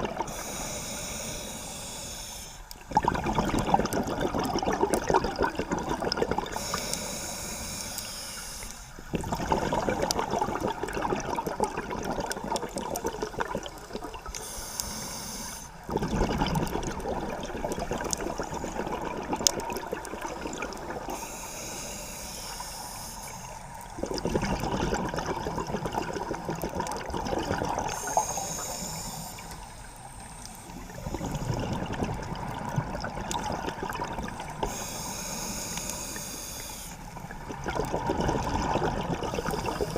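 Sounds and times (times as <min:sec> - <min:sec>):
exhaled bubbles rushing: 0:00.0 - 0:00.5, 0:02.8 - 0:06.7, 0:09.1 - 0:14.4, 0:15.8 - 0:21.2, 0:23.8 - 0:28.4, 0:30.8 - 0:34.8, 0:37.1 - 0:39.9
regulator inhale hiss: 0:00.2 - 0:02.9, 0:06.5 - 0:09.1, 0:14.3 - 0:15.9, 0:21.0 - 0:24.0, 0:27.8 - 0:31.7, 0:34.2 - 0:37.3, 0:39.3 - 0:39.9.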